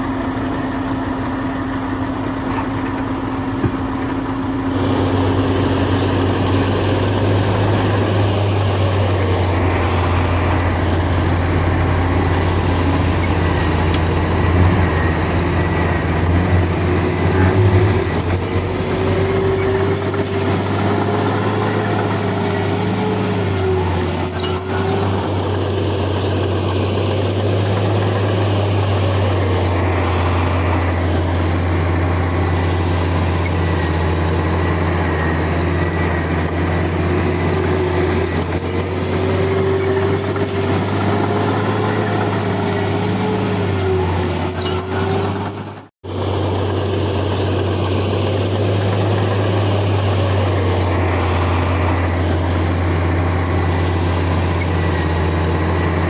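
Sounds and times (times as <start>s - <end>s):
diesel earthmoving machinery droning: 0.0s - 56.0s.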